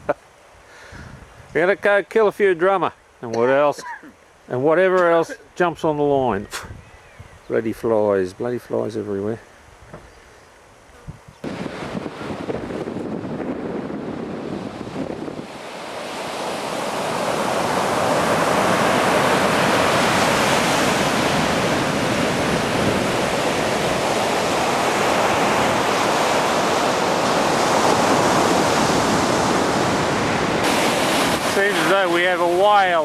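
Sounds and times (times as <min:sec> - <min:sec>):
ocean surf breaking over rocks: 0:11.4 - 0:33.0.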